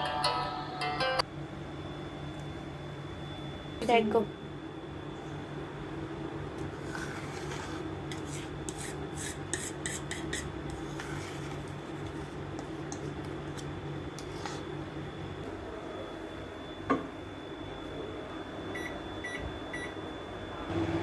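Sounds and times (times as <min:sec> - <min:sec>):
faint high whine: 0:00.0 - 0:06.1
microwave oven humming: 0:00.0 - 0:09.1, 0:10.5 - 0:21.0.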